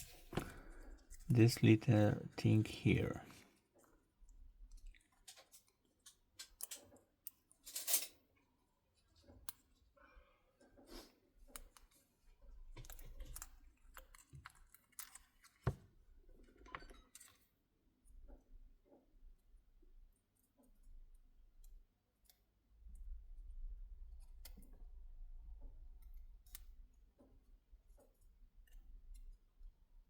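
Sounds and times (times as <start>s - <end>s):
tools and phone parts clicking: 5.0s - 8.1s.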